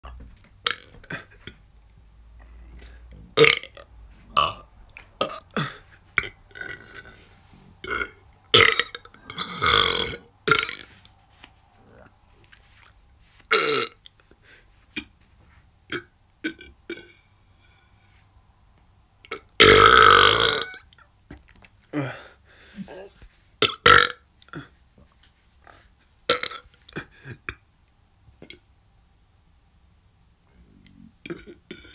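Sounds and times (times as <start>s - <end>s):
person burping: 0.6s - 1.6s, 2.8s - 11.0s, 13.5s - 14.0s, 15.9s - 17.2s, 19.3s - 21.0s, 21.9s - 24.8s, 30.7s - 31.9s.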